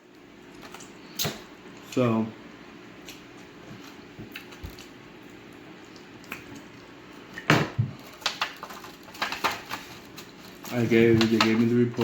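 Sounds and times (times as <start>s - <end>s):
wet chewing: 3.0s - 7.0s.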